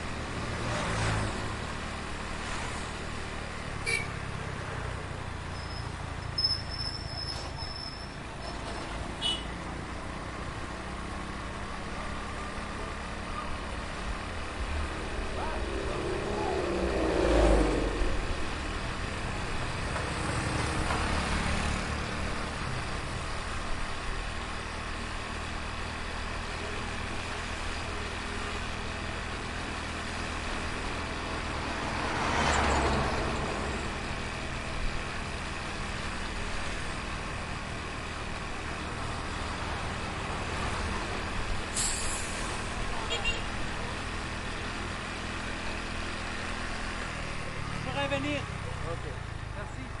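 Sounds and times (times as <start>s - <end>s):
traffic rumble and road noise: 0.0s - 50.0s
vehicle passing close: 14.2s - 22.0s.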